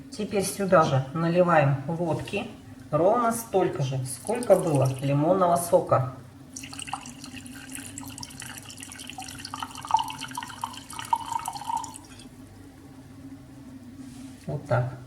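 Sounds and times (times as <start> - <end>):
liquid pouring into a glass: 4.2 - 5.2, 6.5 - 12.3.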